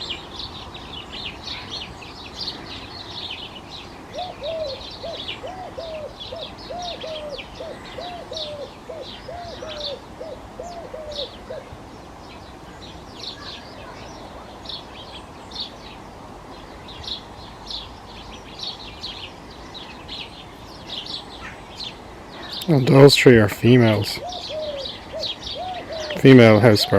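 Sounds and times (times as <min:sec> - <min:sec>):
sparrows chirping: 0:00.0 - 0:26.9.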